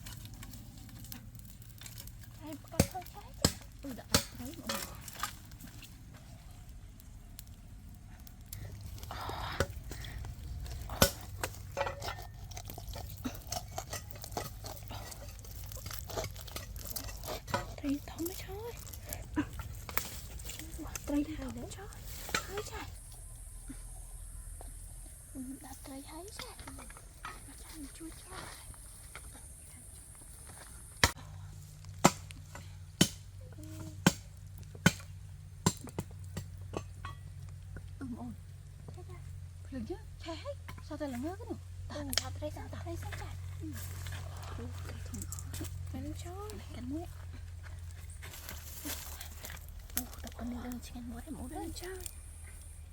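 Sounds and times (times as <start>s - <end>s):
low steady rumble: 0.0s - 52.9s
sharp chopping strikes: 32.0s - 32.3s, 33.0s - 33.2s.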